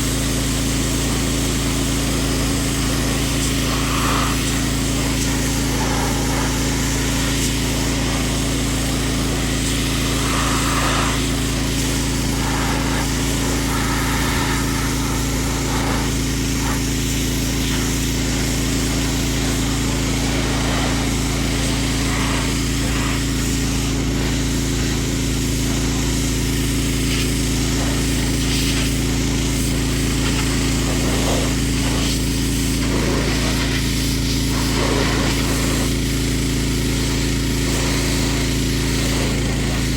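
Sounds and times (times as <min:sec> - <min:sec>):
hiss of water spray: 0:00.0 - 0:39.9
pressure washer motor drone: 0:00.0 - 0:39.9.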